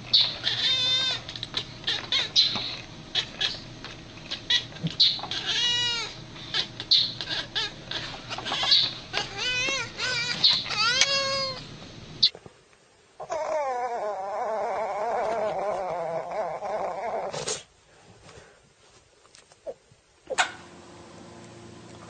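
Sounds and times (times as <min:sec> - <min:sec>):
pet yowling: 0:00.1 - 0:03.6, 0:04.3 - 0:11.6, 0:13.2 - 0:17.4.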